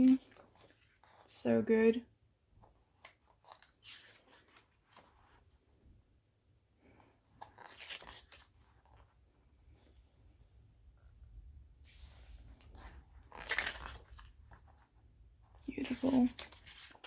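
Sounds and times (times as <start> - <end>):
paper pages rustling: 0.0 - 1.4, 2.6 - 5.6, 6.8 - 9.2, 11.9 - 17.0.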